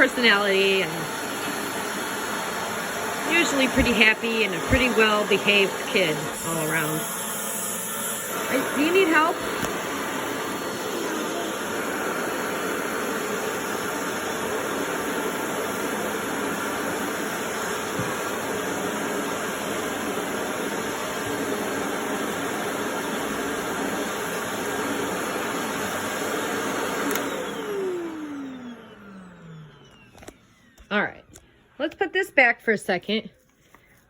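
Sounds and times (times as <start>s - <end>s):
vacuum cleaner motor running: 0.0s - 32.1s
vacuum cleaner switch click: 9.5s - 9.9s, 27.0s - 27.8s.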